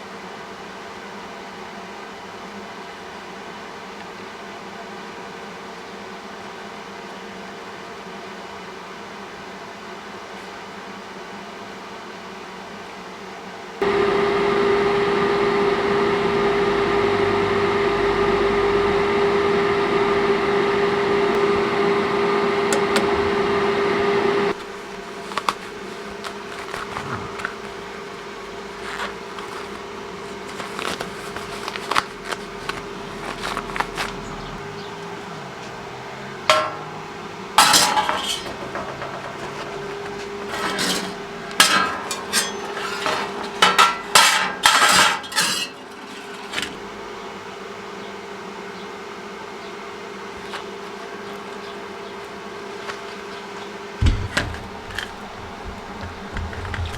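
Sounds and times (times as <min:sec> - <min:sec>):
machine humming: 0:13.8 - 0:44.2, 0:54.0 - 0:56.9.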